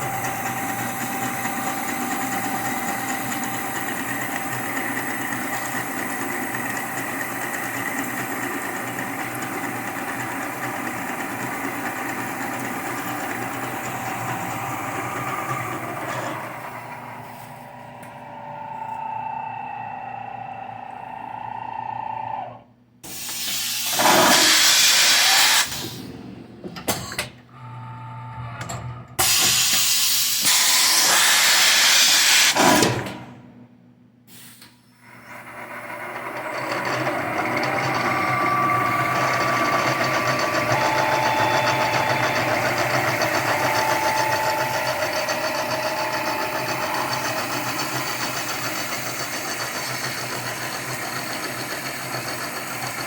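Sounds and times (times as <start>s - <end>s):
milling machine running: 0.0s - 25.9s, 35.1s - 53.0s
thin whining tones: 12.8s - 22.7s, 37.9s - 48.9s
milling machine hissing bursts: 23.0s - 25.8s.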